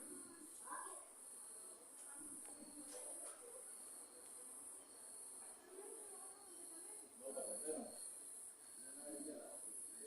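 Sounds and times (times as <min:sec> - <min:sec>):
crickets trilling: 0:03.7 - 0:10.0.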